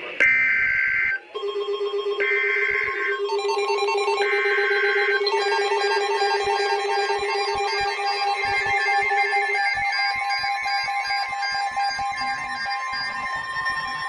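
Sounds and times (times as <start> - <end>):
steady electronic tone: 0.1 - 14.0
buzzing digital data bursts: 0.2 - 14.0
looping electronic beep tune: 0.2 - 14.0.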